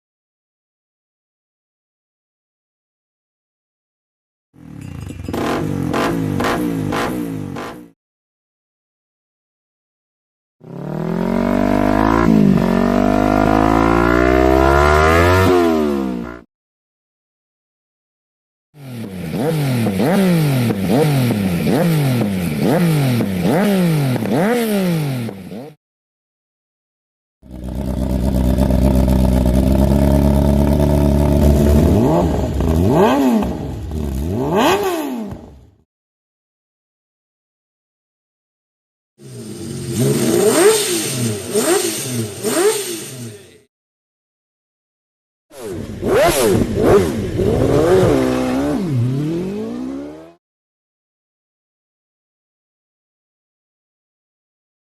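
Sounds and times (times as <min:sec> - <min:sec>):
motorcycle engine accelerating: 0:04.6 - 0:08.0, 0:10.6 - 0:16.4, 0:18.8 - 0:25.8, 0:27.4 - 0:35.8, 0:39.2 - 0:43.7, 0:45.6 - 0:50.4.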